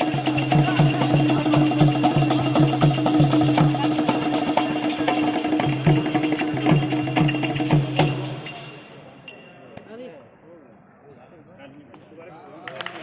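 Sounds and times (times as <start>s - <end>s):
steady percussion beat: 0.0s - 9.9s.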